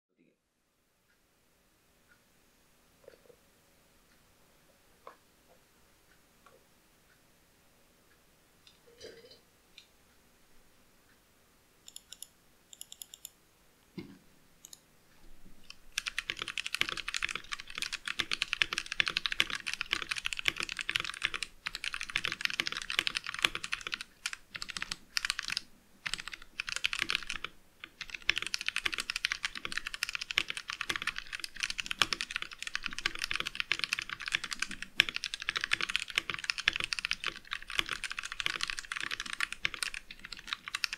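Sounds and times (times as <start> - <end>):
mechanical keyboard typing: 11.9 - 13.4, 15.6 - 40.9.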